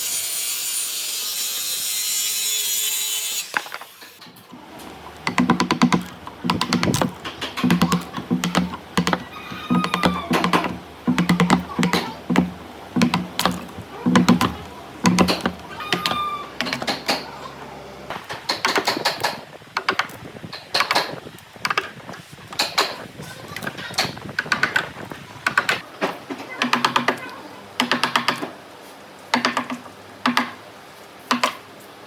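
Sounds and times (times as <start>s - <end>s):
sharp taps and knocks: 4.5s - 17.3s, 18.1s - 23.0s, 29.3s - 30.6s.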